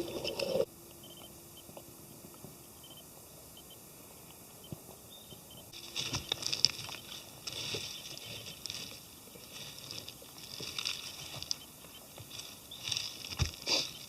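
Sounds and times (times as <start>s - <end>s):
twigs and leaves crackling: 5.7s - 14.0s.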